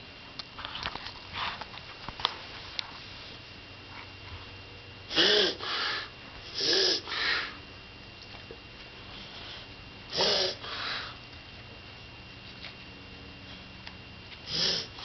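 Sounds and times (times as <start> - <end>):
pet coughing: 5.1 - 7.6, 10.1 - 11.1.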